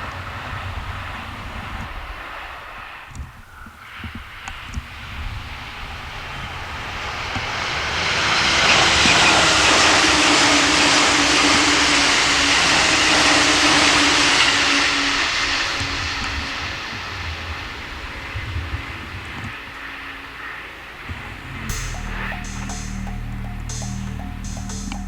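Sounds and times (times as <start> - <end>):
train passing at speed: 5.0 - 25.0
steady electric hum: 20.9 - 25.0.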